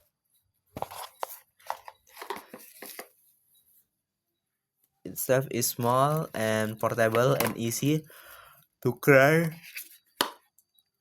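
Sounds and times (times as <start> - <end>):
packaging rustling and scraping: 0.7 - 3.2.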